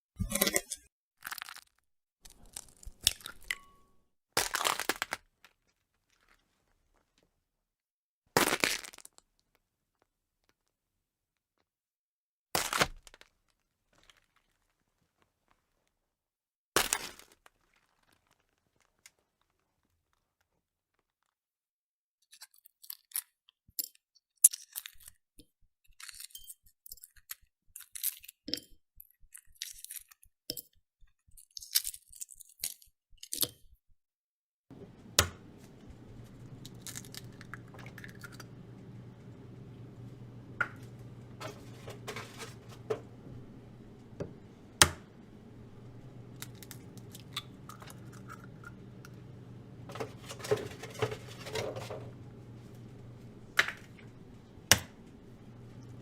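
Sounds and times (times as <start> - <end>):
steady low hum: 34.7 - 56.0
utensils clinking: 34.7 - 56.0
egg shells cracking: 34.8 - 56.0.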